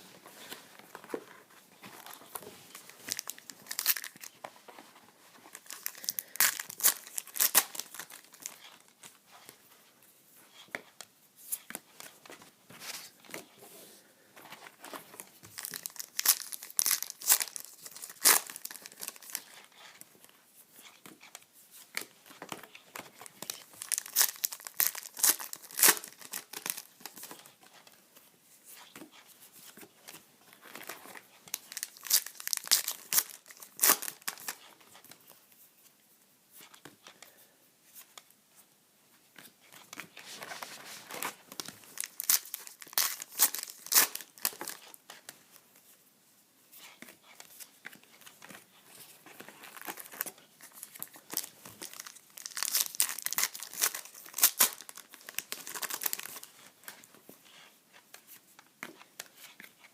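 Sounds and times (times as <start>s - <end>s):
wrappers tearing and crinkling: 3.0s - 4.4s, 5.5s - 8.8s, 15.5s - 19.5s, 23.4s - 27.2s, 31.5s - 34.6s, 41.1s - 45.0s, 49.6s - 56.5s.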